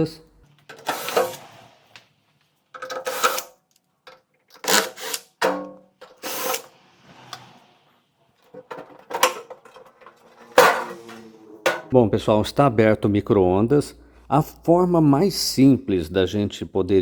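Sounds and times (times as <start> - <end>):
power screwdriver running: 4.7 - 5.3, 6.2 - 6.7.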